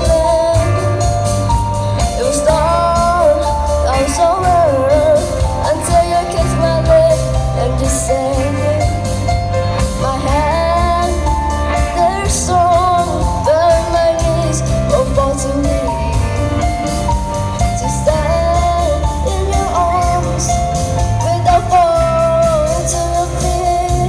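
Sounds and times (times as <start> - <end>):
bass guitar: 0.0 - 24.0
lead singer singing: 0.0 - 24.0
steady drum beat: 0.0 - 24.0.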